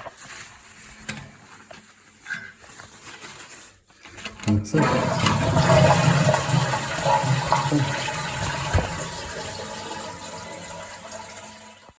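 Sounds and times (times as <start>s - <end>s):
toilet flushing: 4.7s - 12.0s
knock: 8.6s - 9.0s.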